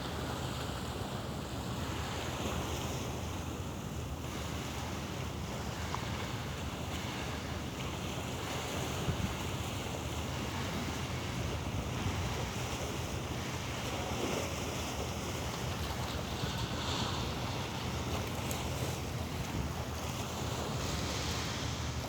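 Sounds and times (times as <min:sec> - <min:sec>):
sea waves: 0:00.0 - 0:22.0
wind buffeting microphone: 0:06.9 - 0:22.0.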